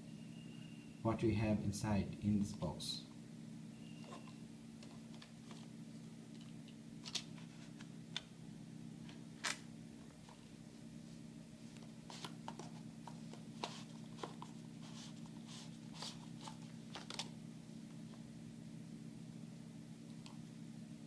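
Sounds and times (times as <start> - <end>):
low electrical hum: 0.0 - 21.0
packaging clicks and rustles: 16.0 - 17.3.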